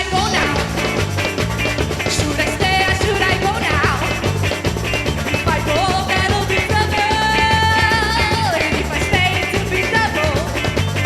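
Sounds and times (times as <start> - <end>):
rock band with samba drums: 0.0 - 11.0.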